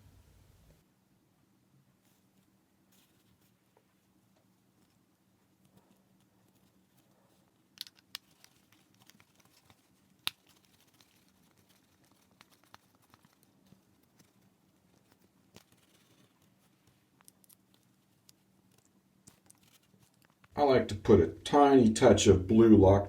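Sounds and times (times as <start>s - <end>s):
low room hum: 0.0s - 23.0s
faint sharp clicks of small parts: 7.7s - 20.6s.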